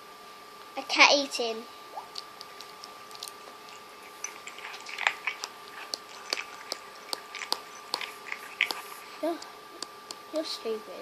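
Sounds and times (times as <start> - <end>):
cat chewing and lapping: 2.1 - 9.6.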